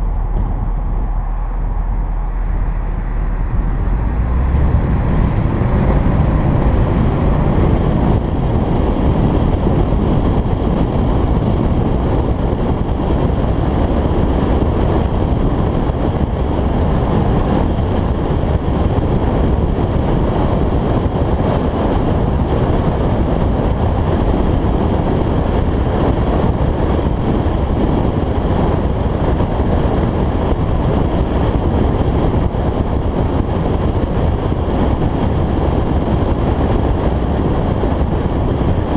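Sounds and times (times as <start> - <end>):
car engine cruising: 0.0 - 38.9
wind buffeting microphone: 0.0 - 38.9.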